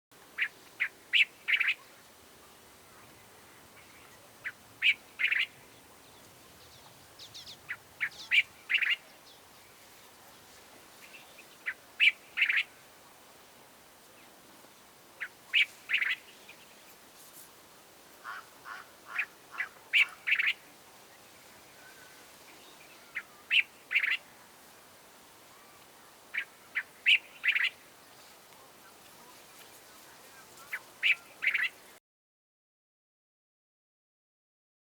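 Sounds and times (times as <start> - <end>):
bird singing short phrases: 3.8 - 9.8, 25.5 - 27.8, 30.3 - 31.9.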